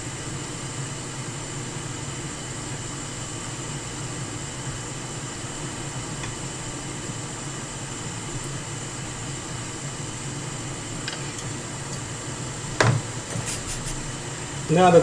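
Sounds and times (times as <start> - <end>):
small fan whirring: 0.0 - 15.0
sharp knock: 12.8 - 13.2.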